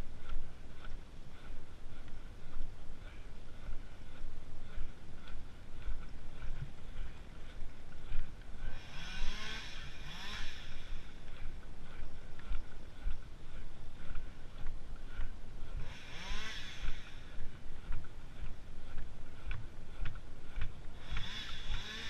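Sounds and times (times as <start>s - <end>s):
low running rumble: 0.0s - 22.0s
engine revving: 3.6s - 18.5s, 20.4s - 22.0s.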